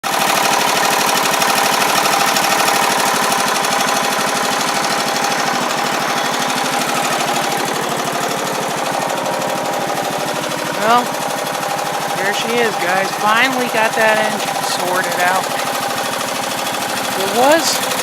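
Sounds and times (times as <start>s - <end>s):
mower engine running: 0.0s - 18.0s.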